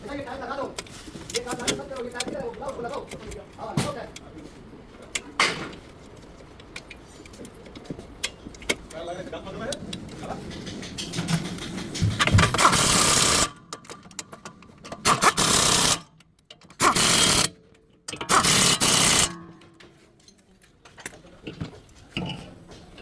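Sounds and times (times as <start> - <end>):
pneumatic impact wrench rattling: 10.6 - 20.0.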